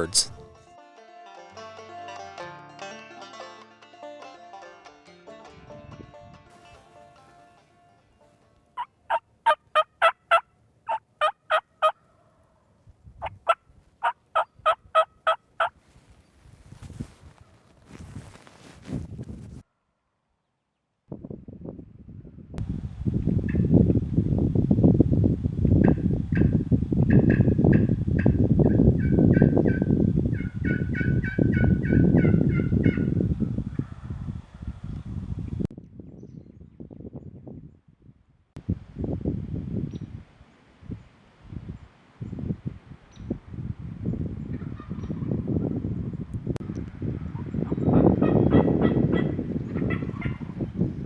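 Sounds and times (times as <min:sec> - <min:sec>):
wild turkey yelping: 0:08.8 - 0:12.0, 0:14.0 - 0:15.7.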